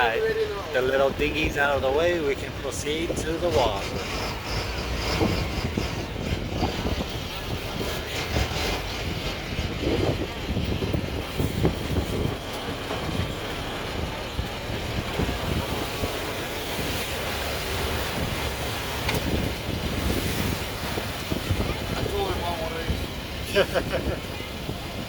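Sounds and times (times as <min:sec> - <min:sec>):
boat engine rumbling: 0:00.0 - 0:25.0
wind buffeting microphone: 0:00.0 - 0:25.0.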